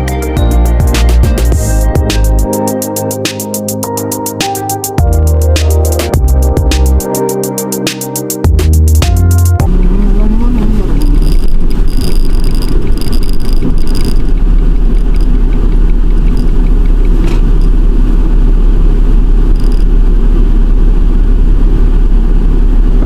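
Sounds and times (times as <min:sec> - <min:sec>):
van engine and road rumble: 0:08.4 - 0:23.0.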